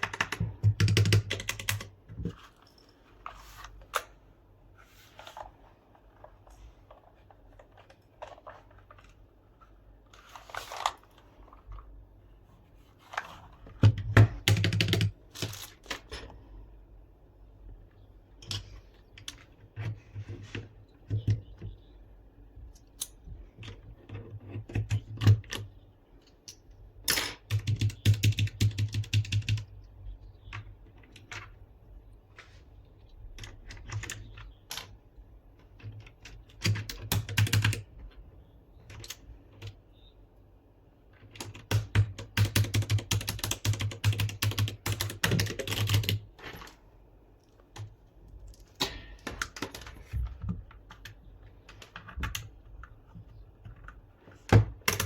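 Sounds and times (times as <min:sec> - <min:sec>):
mechanical keyboard typing: 0:00.0 - 0:02.2, 0:13.8 - 0:16.1, 0:23.6 - 0:25.7, 0:27.3 - 0:29.9, 0:35.8 - 0:37.9, 0:41.2 - 0:46.3, 0:54.8 - 0:55.0.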